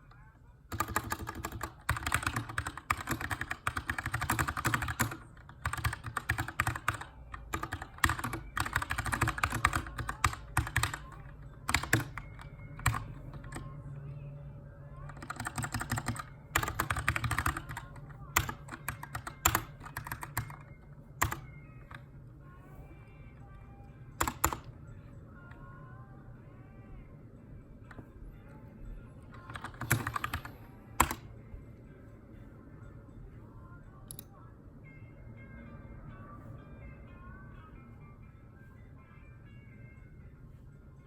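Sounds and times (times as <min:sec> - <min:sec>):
mechanical keyboard typing: 0:00.7 - 0:13.7, 0:15.0 - 0:22.0, 0:24.2 - 0:24.7, 0:29.3 - 0:31.3.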